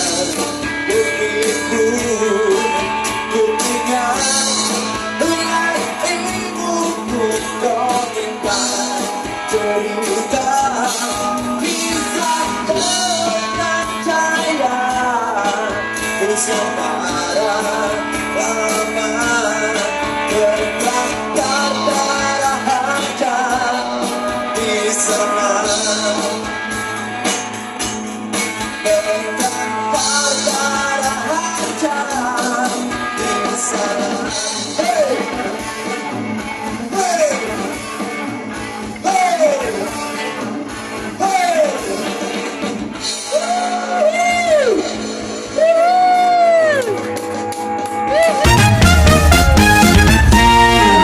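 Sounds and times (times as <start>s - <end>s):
rock music: 0.0s - 51.0s
person singing or wailing: 43.3s - 44.9s, 45.5s - 47.1s, 48.0s - 51.0s.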